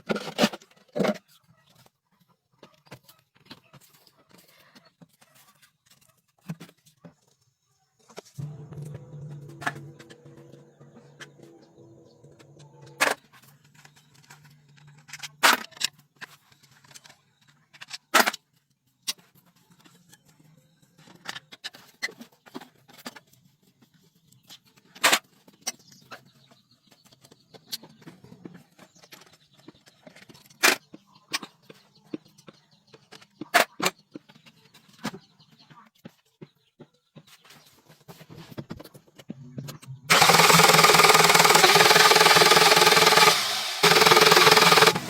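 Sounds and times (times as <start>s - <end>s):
faint low hum: 8.4s - 13.0s
steady pitched hum: 8.4s - 13.0s.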